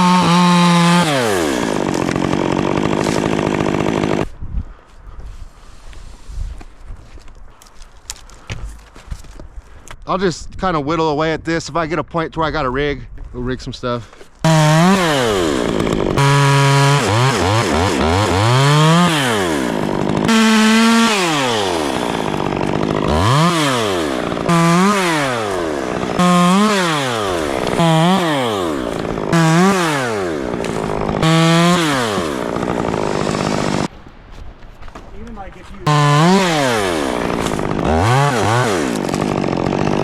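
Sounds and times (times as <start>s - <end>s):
chainsaw engine revving: 0.0s - 4.3s, 14.4s - 33.9s, 35.8s - 40.0s.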